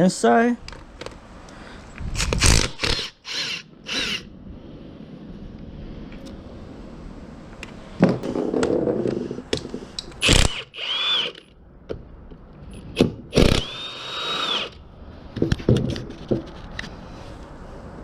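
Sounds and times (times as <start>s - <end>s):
power driver motor whining: 2.5s - 4.3s, 10.2s - 11.5s, 13.4s - 14.8s.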